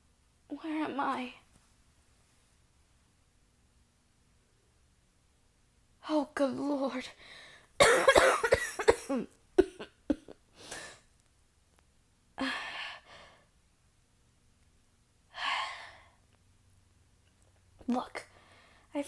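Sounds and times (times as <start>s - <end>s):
woman coughing: 7.8s - 10.4s.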